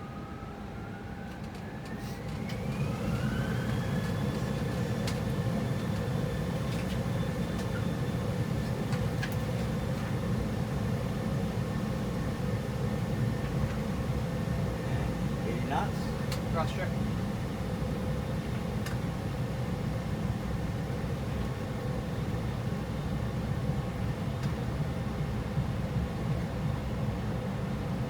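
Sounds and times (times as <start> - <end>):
jet engines spooling up: 1.3 - 8.0.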